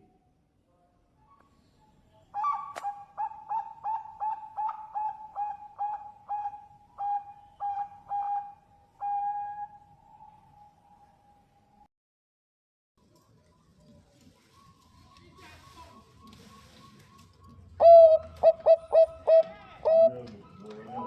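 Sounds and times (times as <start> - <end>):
dove cooing: 2.4 - 9.9, 17.6 - 20.5.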